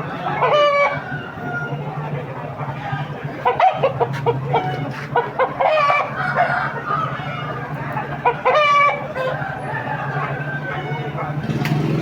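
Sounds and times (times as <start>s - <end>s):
rooster crowing: 0.0s - 1.9s, 5.7s - 7.6s, 9.2s - 11.2s
chickens clucking: 0.0s - 12.0s.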